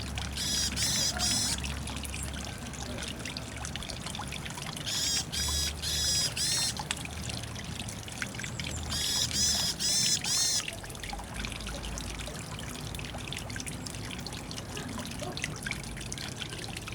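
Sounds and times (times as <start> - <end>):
trickle of running water: 0.0 - 16.9
bird calling repeated notes: 0.4 - 1.6, 4.9 - 6.8, 8.9 - 10.6.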